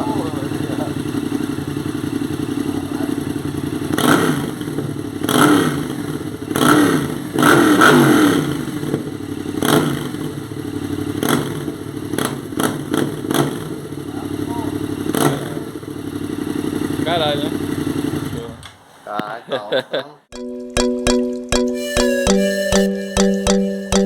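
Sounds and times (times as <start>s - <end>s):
motorcycle engine revving: 0.0s - 18.8s.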